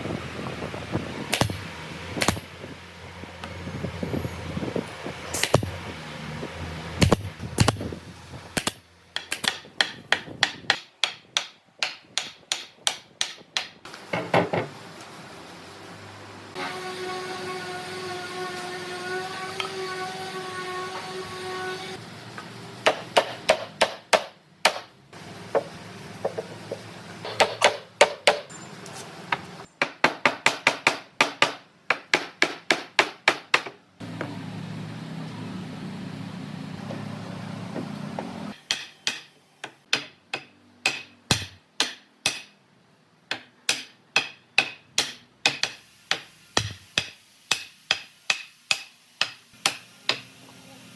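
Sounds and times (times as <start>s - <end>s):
rapid hammer strikes: 1.3s - 1.6s, 2.2s - 2.5s, 5.4s - 5.8s, 7.0s - 7.9s, 8.6s - 13.8s, 22.8s - 24.9s, 27.2s - 28.5s, 29.8s - 33.7s, 38.6s - 42.6s, 43.3s - 50.3s.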